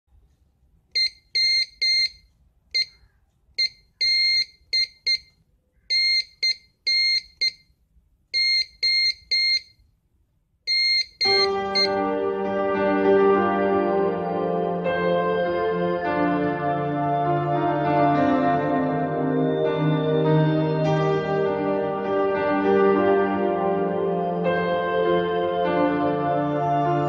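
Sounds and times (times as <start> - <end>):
morse code beeps: 1.0 - 2.2, 3.6 - 5.3, 5.9 - 7.7, 8.4 - 9.8, 10.7 - 12.0
music: 11.2 - 27.0.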